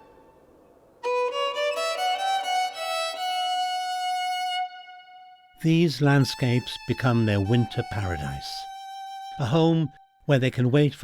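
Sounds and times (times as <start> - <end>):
violin melody: 0.0 - 0.4, 1.0 - 10.4.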